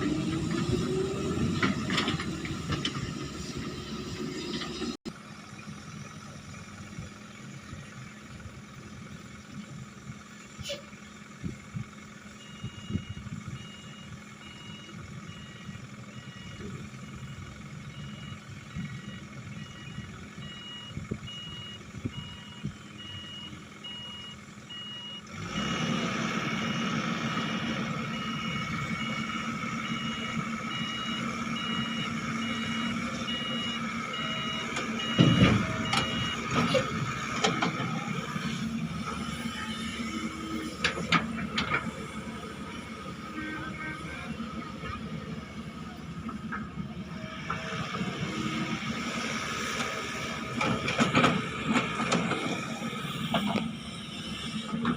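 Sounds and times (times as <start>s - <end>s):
diesel engine running: 0.0s - 54.9s
backup alarm beeping: 26.7s - 36.6s.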